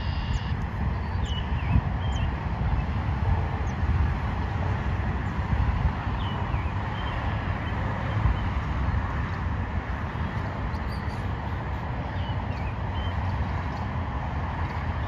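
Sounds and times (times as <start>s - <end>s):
faint bird peeps: 0.0s - 0.6s
highway traffic passing: 0.0s - 15.0s.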